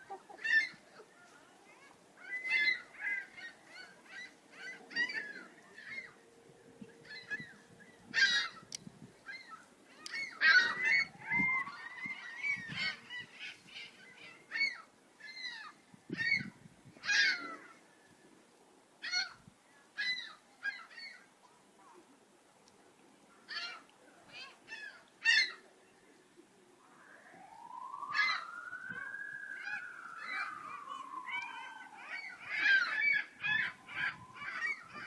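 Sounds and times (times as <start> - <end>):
seagulls calling: 0.0 - 17.8, 20.0 - 21.3, 23.4 - 25.7, 26.8 - 35.0.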